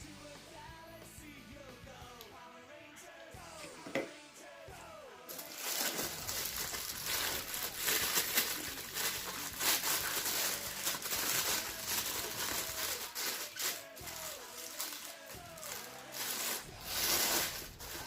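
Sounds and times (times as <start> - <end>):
plastic and paper crinkling: 5.3 - 18.0.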